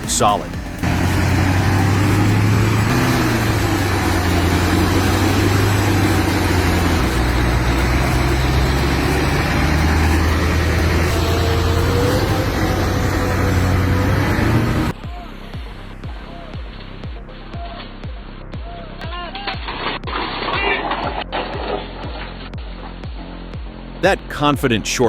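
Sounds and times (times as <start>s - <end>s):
truck diesel engine under load: 0.0s - 15.0s.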